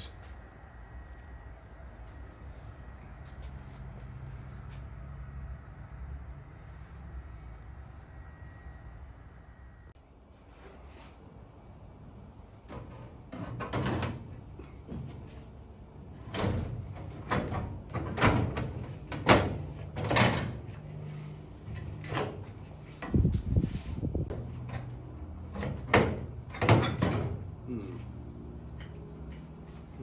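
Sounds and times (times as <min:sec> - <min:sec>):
sheet-metal car parts clunking: 0:16.2 - 0:20.9, 0:24.3 - 0:27.5.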